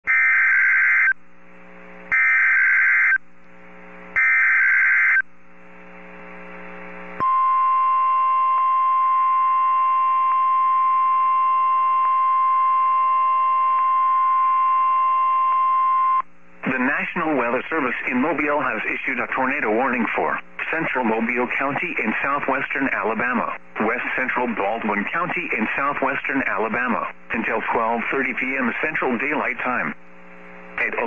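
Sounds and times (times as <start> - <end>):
steady warning alarm tone: 0.1 - 1.2, 2.1 - 3.2, 4.2 - 5.3
low radio hiss: 1.2 - 31.0
screechy digital data bursts: 4.2 - 5.2.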